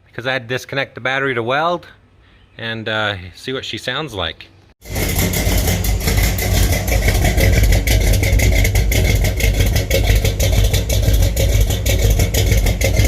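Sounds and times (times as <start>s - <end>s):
truck engine idling: 4.8s - 13.0s.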